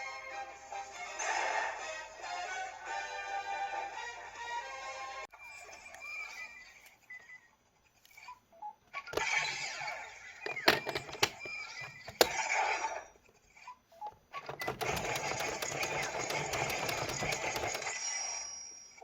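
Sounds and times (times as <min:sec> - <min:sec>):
sharp clicks: 0:14.5 - 0:18.0.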